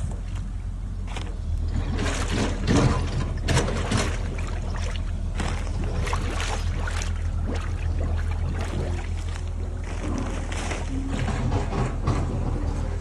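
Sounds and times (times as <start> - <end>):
steady low hum: 0.0 - 13.0
liquid splashing and pouring: 1.8 - 9.5.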